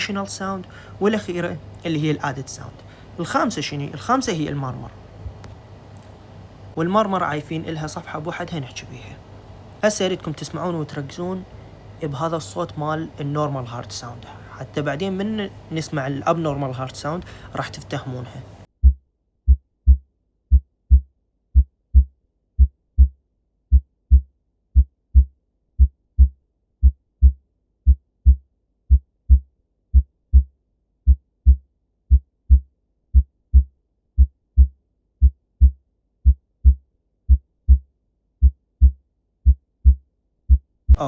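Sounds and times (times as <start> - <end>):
heartbeat lub-dub: 18.8 - 21.0, 21.6 - 29.4, 31.1 - 37.8.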